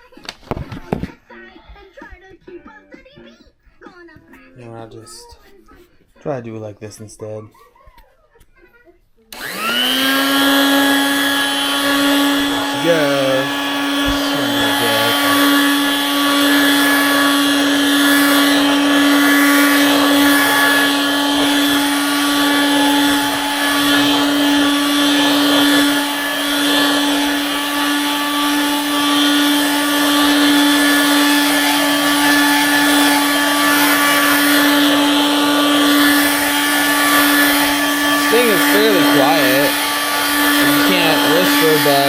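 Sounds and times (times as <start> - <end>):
hand vacuum running: 9.3 - 42.0.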